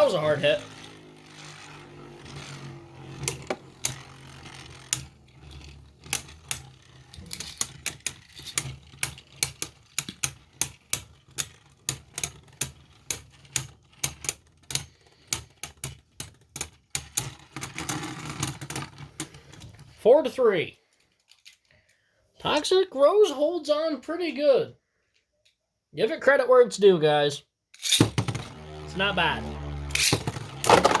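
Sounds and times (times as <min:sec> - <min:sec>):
low spinning hum: 0:00.0 - 0:08.9, 0:28.2 - 0:31.0
spinning tops clashing clicks: 0:00.1 - 0:18.8, 0:27.8 - 0:28.9, 0:29.5 - 0:31.0.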